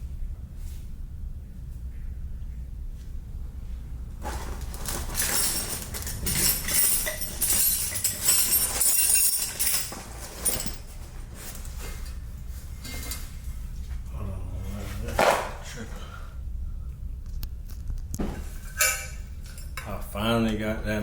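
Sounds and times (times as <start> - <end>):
low steady hum: 0.0 - 21.0
metal clinking and scraping: 4.2 - 13.8, 18.3 - 19.9.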